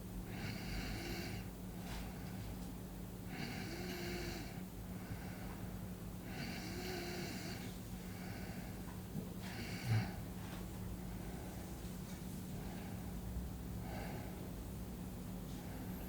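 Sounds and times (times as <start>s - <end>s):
steady low hum: 0.0s - 16.0s
person snoring softly: 3.3s - 4.6s, 6.2s - 8.5s.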